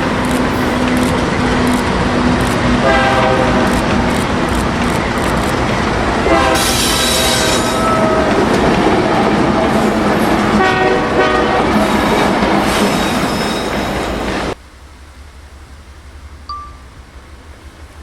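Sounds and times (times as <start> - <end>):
locomotive horn: 0.0 - 4.1, 6.1 - 13.5
freight train rumbling past: 0.0 - 18.0.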